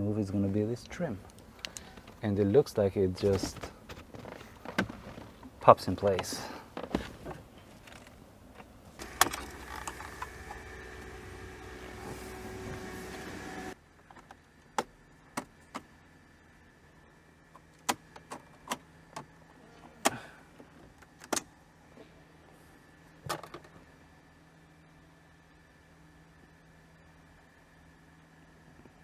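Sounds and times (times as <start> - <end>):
steady hum: 0.0 - 13.8.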